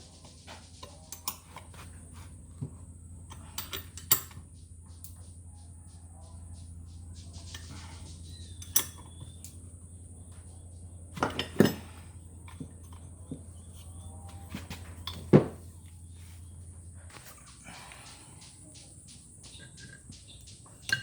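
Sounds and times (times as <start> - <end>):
steady low hum: 0.0 - 21.0
metal tools clinking: 0.8 - 5.3, 6.7 - 16.4, 20.7 - 21.0.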